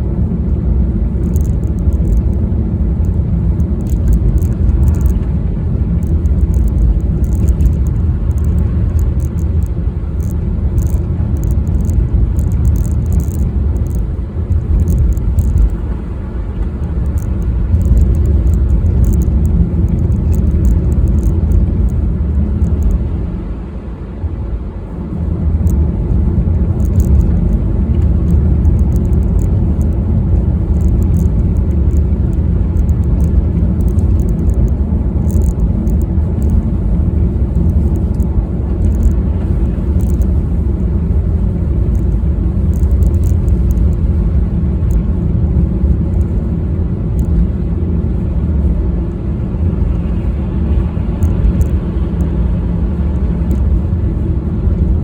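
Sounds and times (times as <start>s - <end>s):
car engine and road noise: 0.0s - 55.0s
faint high ticks: 1.2s - 2.4s, 3.0s - 16.0s, 16.6s - 23.1s, 26.8s - 40.6s, 41.8s - 45.1s, 45.8s - 46.4s, 47.2s - 47.4s, 49.8s - 53.8s.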